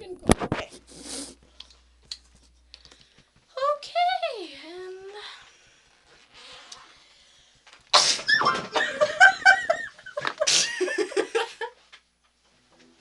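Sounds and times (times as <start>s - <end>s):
loud sneezes: 7.9s - 8.6s, 10.5s - 10.7s.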